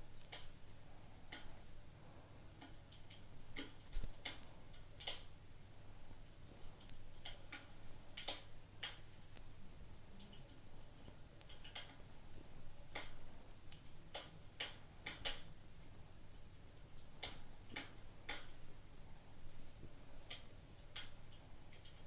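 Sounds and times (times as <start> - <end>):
wood fire crackling: 0.0 - 22.0.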